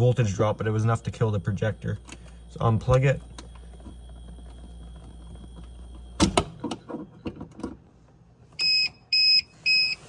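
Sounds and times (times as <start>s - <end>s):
low electrical hum: 0.0s - 10.0s
short alarm beeps: 8.6s - 10.0s.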